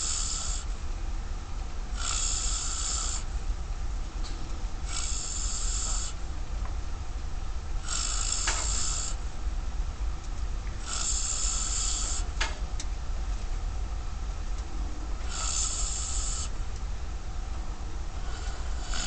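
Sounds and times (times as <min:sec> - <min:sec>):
man snoring heavily: 0:00.0 - 0:00.7, 0:01.9 - 0:03.3, 0:04.8 - 0:06.2, 0:07.8 - 0:09.2, 0:10.8 - 0:12.3, 0:15.2 - 0:16.5, 0:18.2 - 0:19.0
steady low hum: 0:00.0 - 0:19.0.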